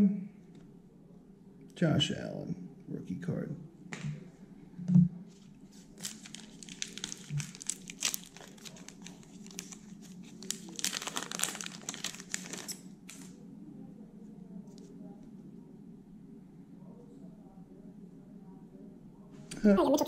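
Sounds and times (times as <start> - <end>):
foil wrapper crinkling and tearing: 5.8 - 13.3.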